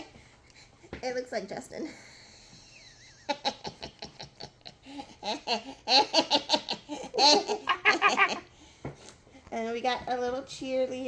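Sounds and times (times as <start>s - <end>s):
woman laughing: 2.6s - 8.5s.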